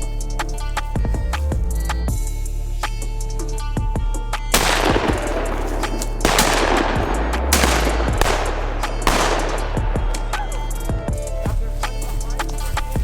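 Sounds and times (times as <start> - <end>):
background music: 0.0 - 13.0
shotgun blasts with echo: 4.5 - 11.3.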